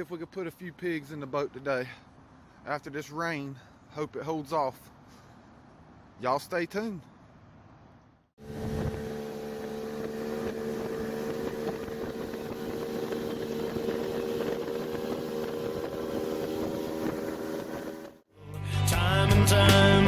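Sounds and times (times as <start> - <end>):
boat motor running: 8.4 - 18.2
rushing wind: 8.4 - 18.2
water noise: 8.4 - 18.2.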